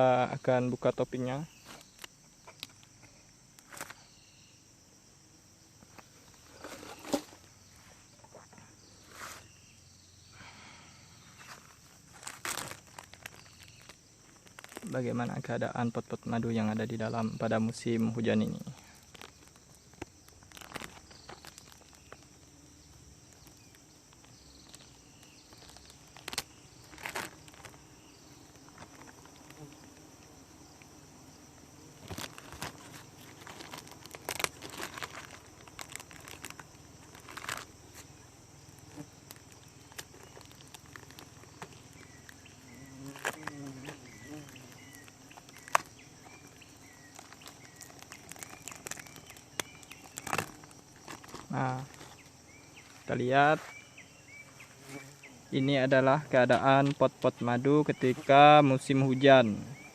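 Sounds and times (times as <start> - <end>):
high insect chirring: 0.0 - 59.9
clicks and knocks of hive box: 23.2 - 52.9.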